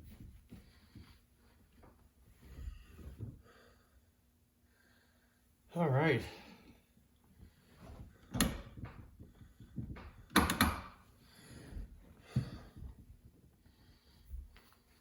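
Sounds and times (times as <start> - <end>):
knocks and clicks of handled parts: 9.8 - 11.0.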